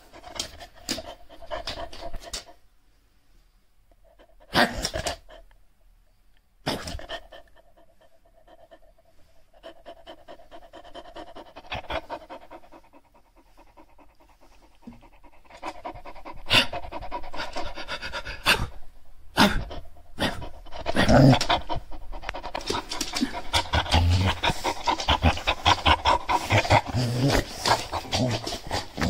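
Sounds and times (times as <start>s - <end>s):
dog panting: 0.0s - 2.6s, 6.8s - 29.0s
dog sharp puffs: 0.0s - 2.6s, 4.6s - 5.4s, 9.7s - 18.8s, 19.4s - 29.0s.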